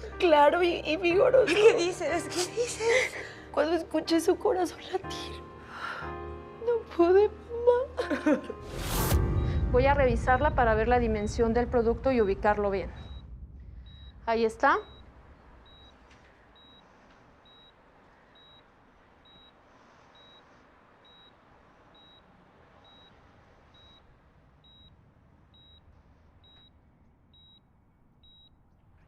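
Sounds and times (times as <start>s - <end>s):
faint room hiss: 10.4s - 29.0s
medical monitor beeping: 12.0s - 28.6s.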